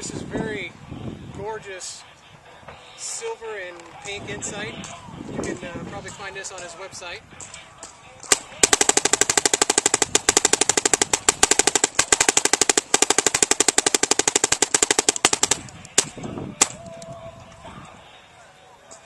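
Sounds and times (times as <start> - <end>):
paintball marker firing rapid shots: 8.2 - 16.9.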